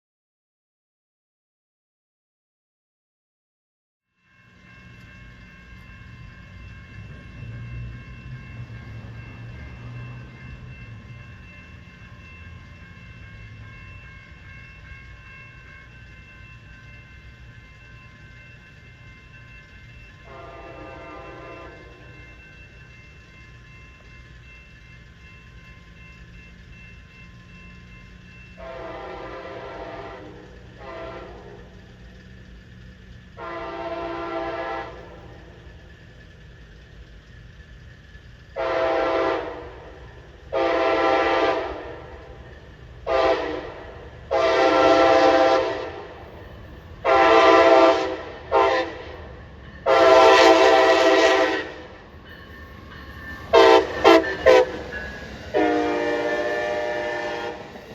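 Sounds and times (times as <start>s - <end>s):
locomotive air horn blasts: 20.3s - 22.0s, 28.6s - 31.7s, 33.4s - 35.0s, 38.6s - 42.0s, 43.0s - 46.1s, 47.0s - 49.2s, 49.8s - 51.9s, 53.5s - 54.8s, 55.5s - 57.7s.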